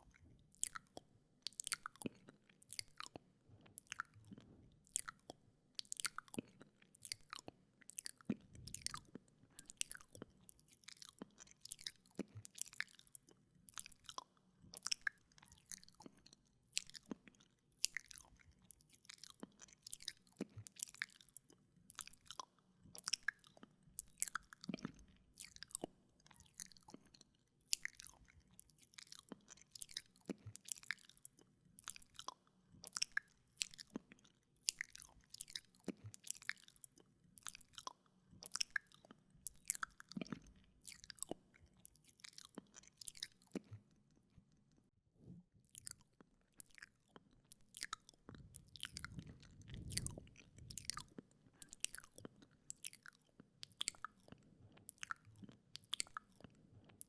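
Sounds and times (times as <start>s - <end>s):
lip smacks: 47.5s - 57.0s
tongue clicks: 47.5s - 57.0s.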